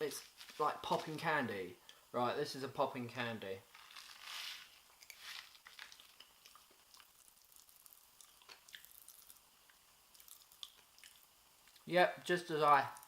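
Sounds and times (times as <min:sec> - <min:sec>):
popping candy crackling in mouth: 0:03.7 - 0:11.9, 0:12.6 - 0:13.0.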